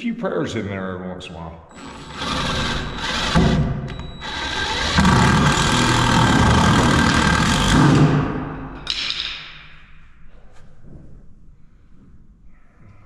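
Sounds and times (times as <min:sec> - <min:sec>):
cordless drill running: 0:01.8 - 0:08.0.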